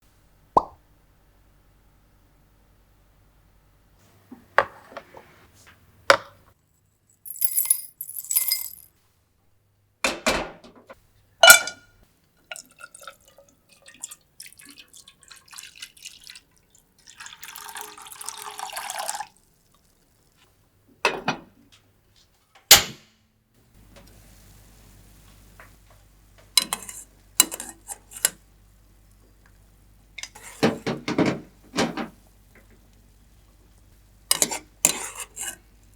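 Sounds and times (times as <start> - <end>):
utensils knocking and clinking: 7.3 - 8.9
liquid pouring: 12.5 - 20.4.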